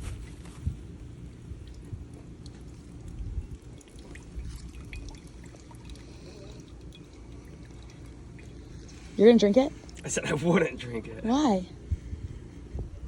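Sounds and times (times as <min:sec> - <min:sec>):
liquid trickling into a cup: 0:01.3 - 0:10.4.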